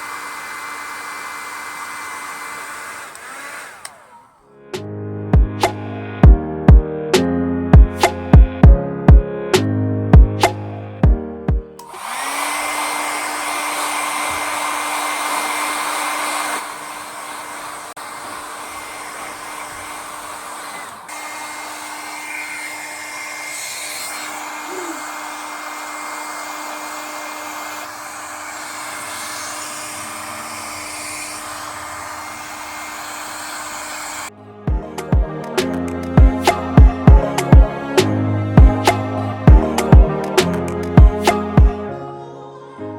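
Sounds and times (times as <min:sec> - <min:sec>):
hair dryer running: 0:00.0 - 0:04.5, 0:11.8 - 0:41.9
music with a beat: 0:04.8 - 0:11.8, 0:34.7 - 0:41.8.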